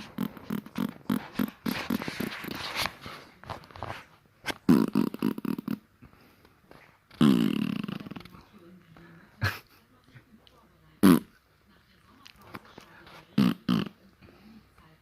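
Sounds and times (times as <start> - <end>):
fart sounds: 0.0 - 2.6, 4.5 - 5.8, 7.1 - 8.3, 11.0 - 11.3, 13.4 - 14.0.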